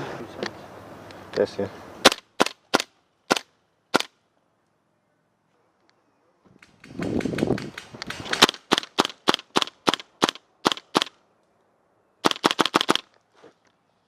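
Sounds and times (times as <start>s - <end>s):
airsoft gun firing: 6.7s - 11.1s, 12.2s - 13.0s.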